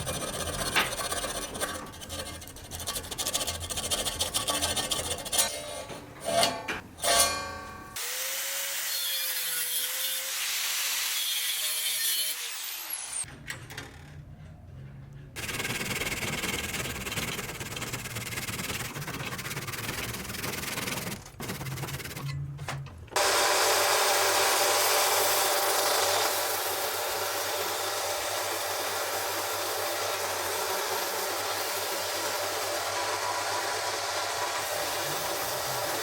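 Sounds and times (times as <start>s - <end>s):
tools scraping on wood: 0.0s - 7.5s, 15.4s - 22.8s.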